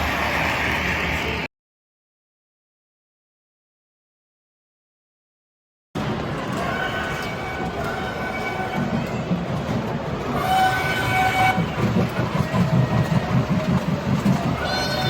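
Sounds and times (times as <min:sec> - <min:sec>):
train rumbling: 0:00.0 - 0:01.5, 0:06.0 - 0:15.0.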